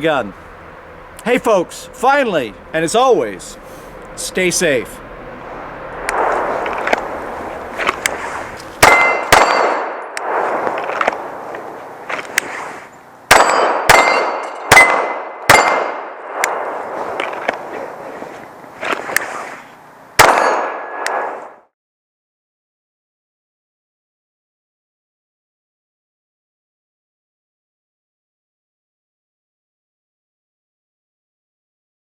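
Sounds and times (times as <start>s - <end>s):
metallic clang and ring: 7.8s - 10.1s
pistol gunshots: 8.8s - 11.4s, 13.3s - 16.8s, 20.2s - 21.6s.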